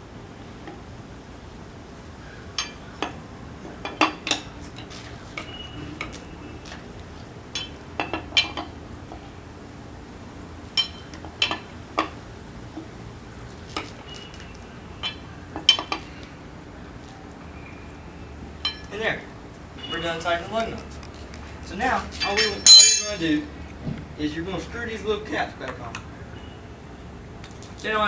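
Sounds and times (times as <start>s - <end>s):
lug wrench clinking on lug nuts: 2.5s - 3.2s, 7.6s - 8.7s, 10.7s - 12.1s, 18.6s - 19.0s, 22.1s - 23.4s.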